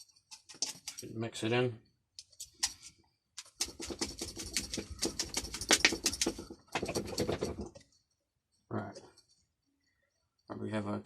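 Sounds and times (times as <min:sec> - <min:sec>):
powder rattling in shaken jar: 0:03.4 - 0:07.8.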